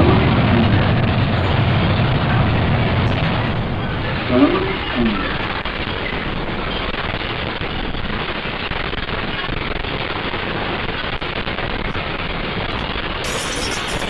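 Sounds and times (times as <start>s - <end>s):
dense rumbling noise: 0.0s - 14.0s.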